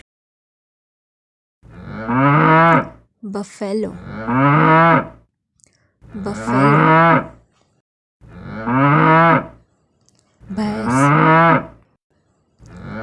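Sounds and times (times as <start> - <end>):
water buffalo lowing: 1.6 - 3.0, 3.9 - 5.2, 6.1 - 7.4, 8.2 - 9.6, 10.4 - 11.8, 12.6 - 13.0.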